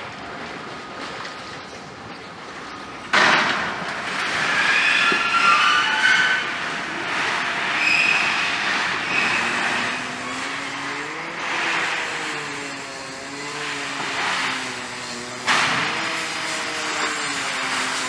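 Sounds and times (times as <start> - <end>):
metal screeching and squealing: 4.4 - 18.0
loud metal crash: 14.1 - 18.0.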